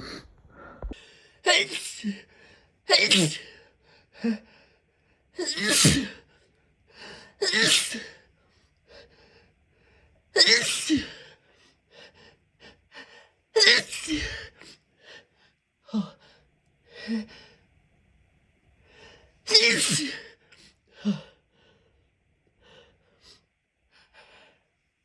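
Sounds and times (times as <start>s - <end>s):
person sneezing: 1.5s - 2.2s, 2.9s - 3.5s, 5.4s - 6.2s, 7.4s - 8.2s, 10.4s - 11.2s, 13.6s - 14.6s, 19.5s - 20.3s.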